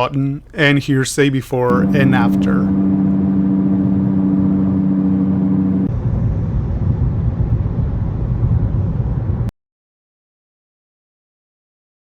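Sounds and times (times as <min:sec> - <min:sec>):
wheel bearing hum: 0:01.7 - 0:09.2
road rumble: 0:01.7 - 0:09.5.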